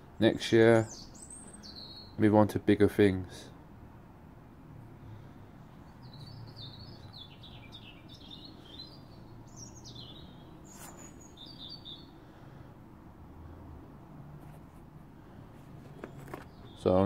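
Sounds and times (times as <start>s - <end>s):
bird chirping: 0.2s - 2.2s, 5.6s - 12.5s, 15.9s - 17.0s.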